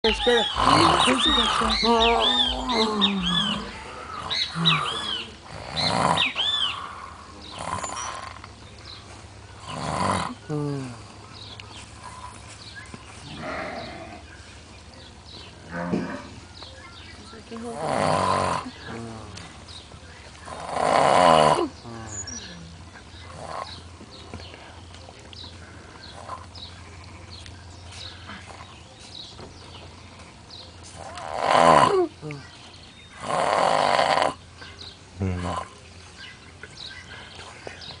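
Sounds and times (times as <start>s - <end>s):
birds chirping: 0.0s - 38.0s
man snoring loudly: 0.5s - 1.8s, 5.5s - 6.4s, 9.6s - 10.7s, 20.5s - 21.7s
man snoring: 3.3s - 6.3s.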